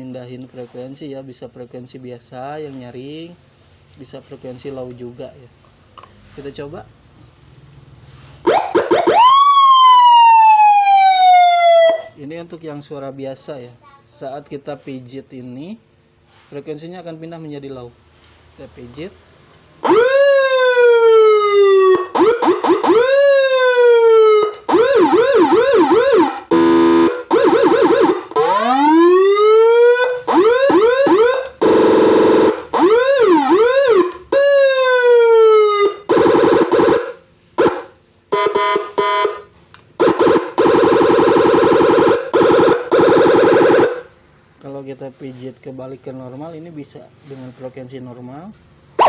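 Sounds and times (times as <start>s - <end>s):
electronic siren tones: 8.5s - 12.1s, 19.8s - 44.1s.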